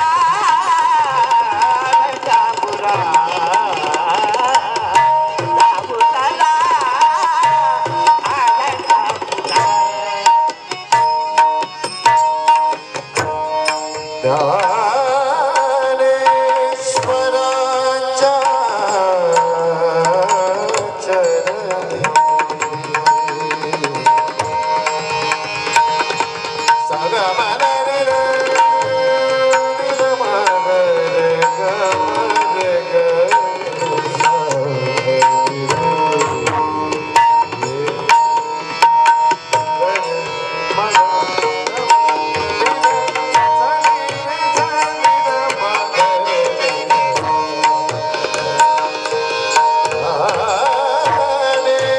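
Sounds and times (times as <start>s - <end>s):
hand drum rhythm: 0.0s - 14.9s, 18.2s - 51.9s
wavering melody: 0.6s - 51.9s.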